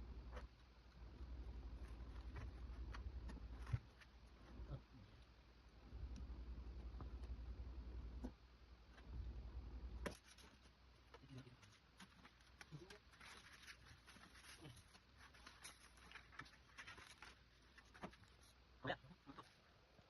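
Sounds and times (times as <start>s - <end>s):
faint scratching: 0.0s - 19.7s
low hum: 0.0s - 20.0s.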